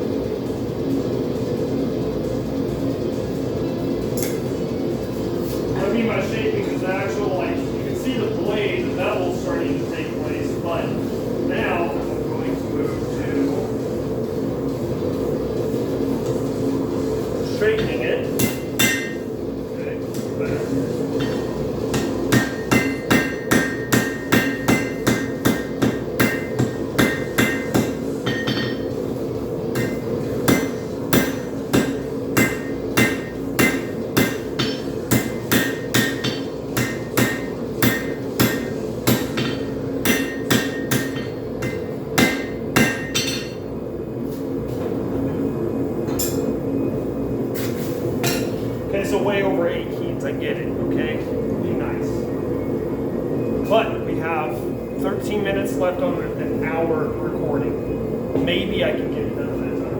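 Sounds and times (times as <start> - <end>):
steady hum: 0.0 - 59.9
hammer ringing on anvil: 18.4 - 19.2, 21.2 - 28.9, 29.8 - 43.6.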